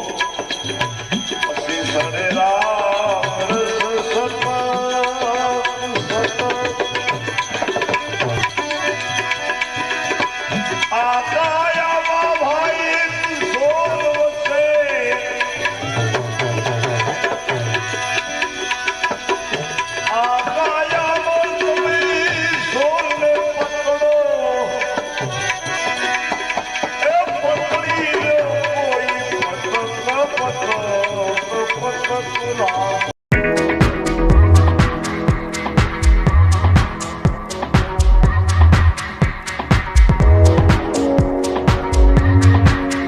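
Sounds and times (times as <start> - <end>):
tabla drum strokes: 0.0 - 43.0
low booming bass thuds: 33.3 - 35.0, 35.8 - 37.4, 40.0 - 42.8
sliding melody: 33.3 - 43.0.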